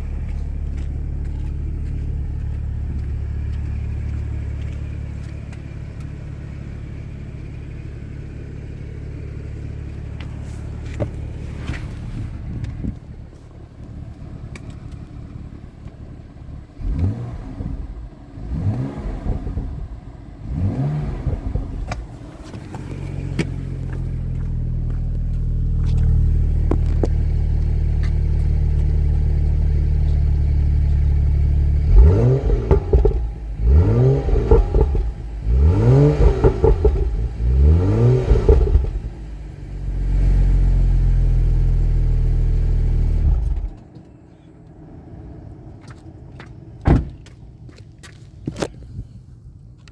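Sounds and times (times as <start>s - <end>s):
car engine revving: 16.8s - 43.8s.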